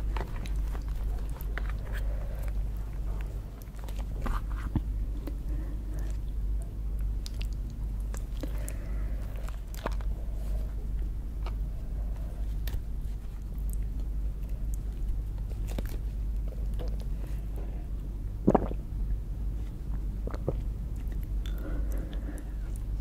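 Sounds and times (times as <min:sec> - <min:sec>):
person chewing and crunching: 0:00.0 - 0:17.4
steady low hum: 0:00.0 - 0:23.0.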